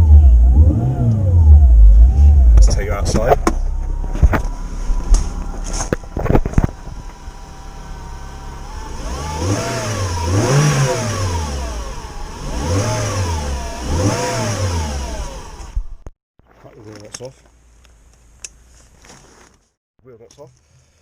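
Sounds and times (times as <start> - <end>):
car engine revving: 0.0 - 16.0.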